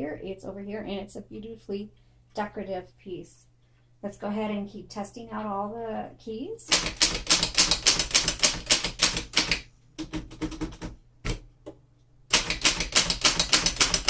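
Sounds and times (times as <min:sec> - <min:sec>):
typewriter key strikes: 0:06.7 - 0:11.4, 0:12.3 - 0:14.0.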